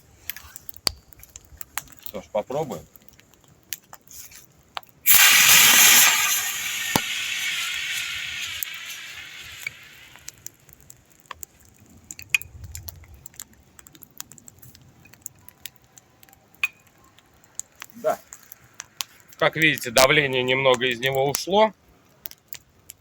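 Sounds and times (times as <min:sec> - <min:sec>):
fire extinguisher hissing: 0:05.1 - 0:10.4.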